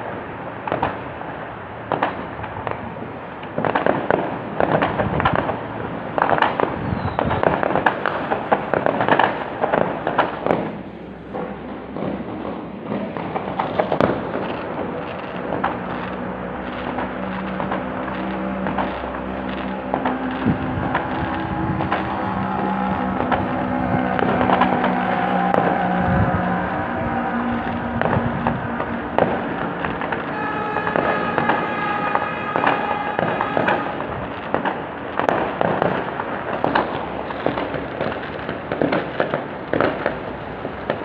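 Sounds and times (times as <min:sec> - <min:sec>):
fireworks rumble: 0:00.0 - 0:41.0
faint crackles: 0:00.6 - 0:41.0
low hum: 0:10.7 - 0:34.0.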